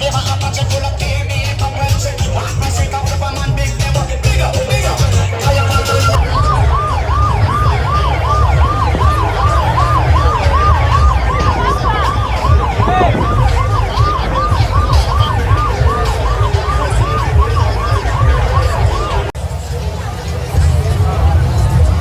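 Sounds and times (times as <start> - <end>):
heavy low rumble: 0.0 - 22.0
siren yelp: 5.2 - 19.4.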